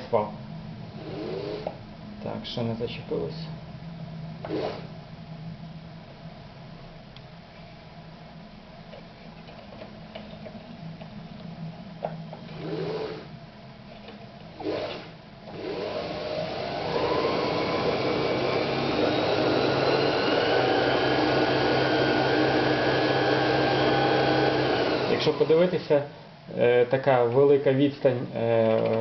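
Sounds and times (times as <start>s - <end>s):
sewing machine motor whirring: 1.0s - 1.8s, 4.4s - 4.9s, 12.4s - 13.3s, 14.6s - 25.8s.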